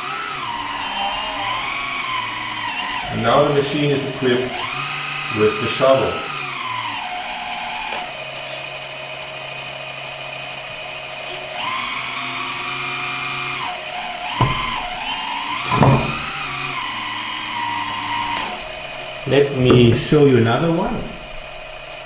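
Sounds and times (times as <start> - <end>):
hydraulic pump whining: 0.0 - 22.0
clunks: 14.3 - 17.0, 18.1 - 21.9.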